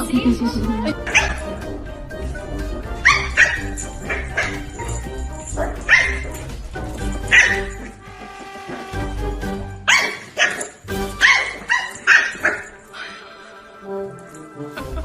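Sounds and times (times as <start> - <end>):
background music: 0.0 - 15.0
dog barking: 1.0 - 1.7, 2.9 - 8.0, 9.9 - 13.2.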